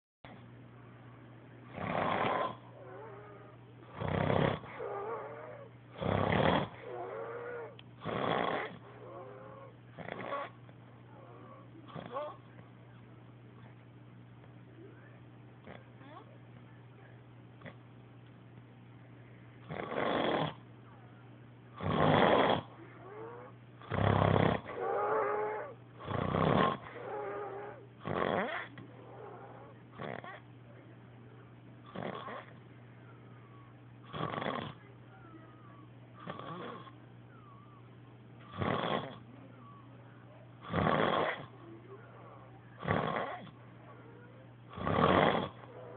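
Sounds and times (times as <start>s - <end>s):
man snoring loudly: 1.7s - 2.6s, 3.9s - 8.8s, 21.8s - 22.7s, 23.9s - 27.4s, 28.0s - 28.6s, 34.1s - 34.8s, 40.7s - 41.4s, 44.8s - 45.6s.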